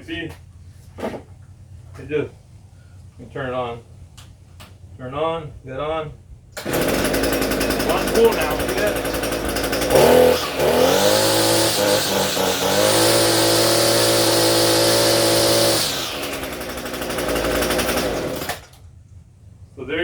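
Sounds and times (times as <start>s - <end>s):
string trimmer engine revving: 6.6s - 18.8s.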